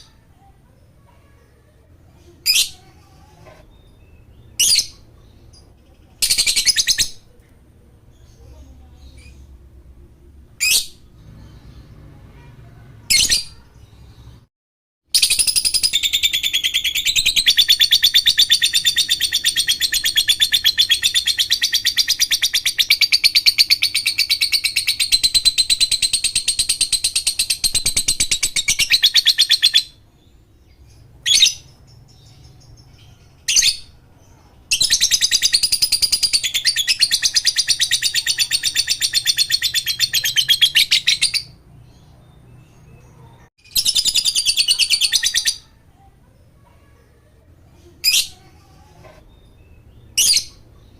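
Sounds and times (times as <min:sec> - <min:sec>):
bird chattering trill: 0:15.2 - 0:30.0, 0:34.7 - 0:41.6, 0:43.6 - 0:45.7.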